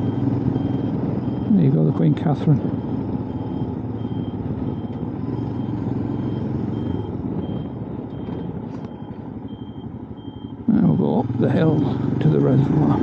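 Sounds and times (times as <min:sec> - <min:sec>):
motorcycle engine running: 0:00.0 - 0:08.8
road and wind rumble: 0:00.0 - 0:13.0.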